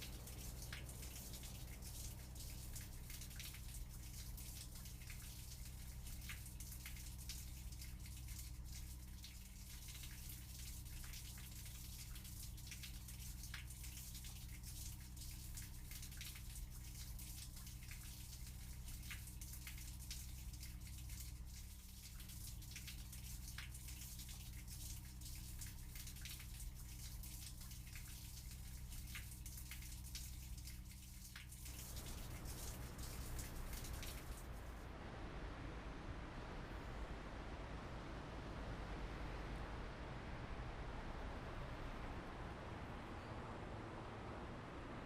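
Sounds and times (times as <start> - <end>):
raindrops ticking: 0.0 - 34.8
rain hiss: 0.0 - 45.0
low hum: 31.6 - 45.0.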